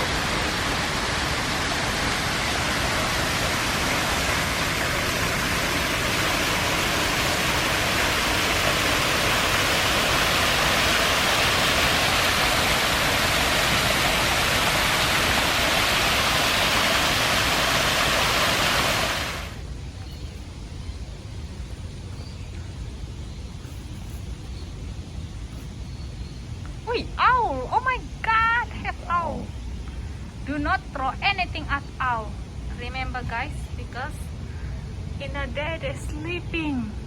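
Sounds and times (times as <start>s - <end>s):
rushing falling water: 0.0s - 19.8s.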